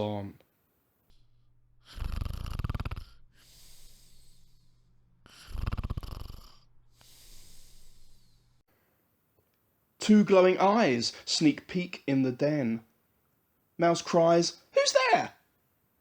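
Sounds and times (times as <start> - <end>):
loud rattling snores: 1.8 - 4.5, 5.2 - 8.3.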